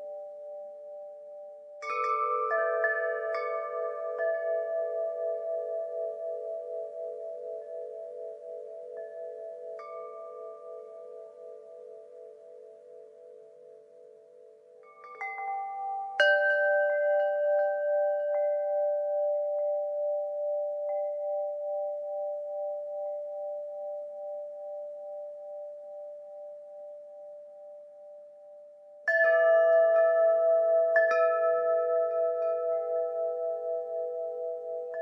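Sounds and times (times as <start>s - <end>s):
wind chimes ringing: 1.8s - 13.5s, 14.9s - 25.3s.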